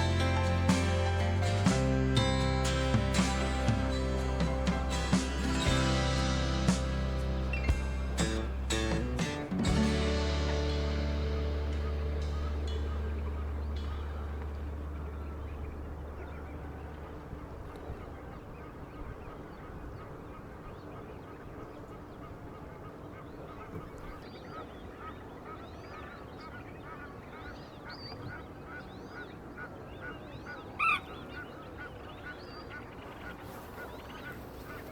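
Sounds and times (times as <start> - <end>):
flamingos honking: 0.0 - 18.6, 30.6 - 34.9.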